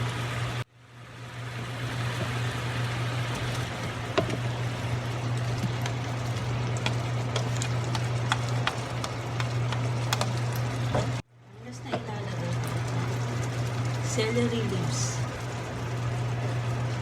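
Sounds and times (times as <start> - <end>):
steady low hum: 0.0 - 17.0
shrimp sizzling in a pan: 1.8 - 11.2.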